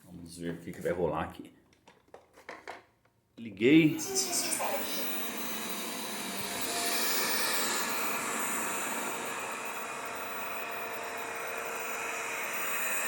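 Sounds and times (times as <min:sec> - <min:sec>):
robot vacuum fan whirring: 0:03.9 - 0:13.0.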